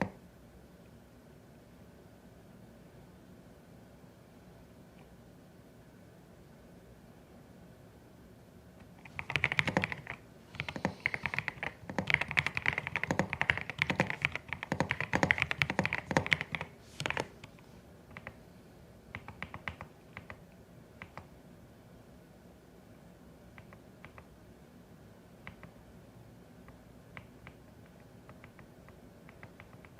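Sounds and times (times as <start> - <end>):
typing on a mechanical keyboard: 9.0 - 17.5, 18.1 - 18.4, 19.1 - 20.4, 27.2 - 29.9.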